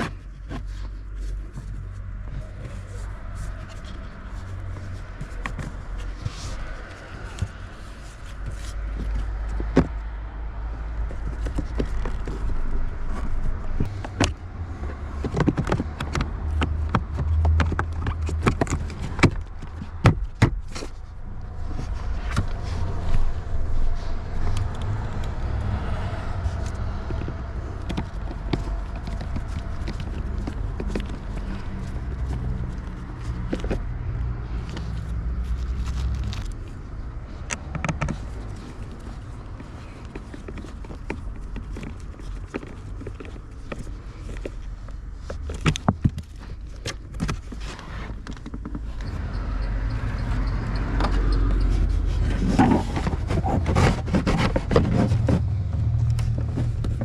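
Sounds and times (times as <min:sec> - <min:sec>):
sharp clicks and knocks: 0:11.0 - 0:21.1, 0:37.4 - 0:57.0.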